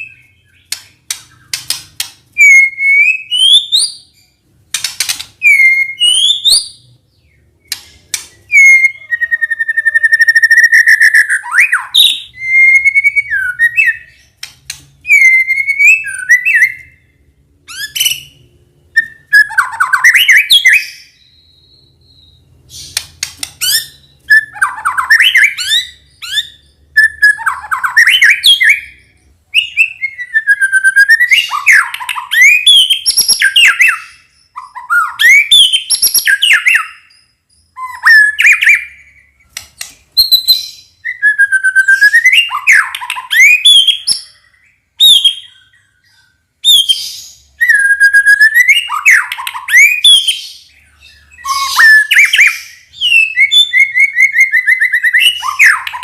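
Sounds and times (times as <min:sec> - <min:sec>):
songbird whistling and trilling: 0:00.0 - 0:56.0.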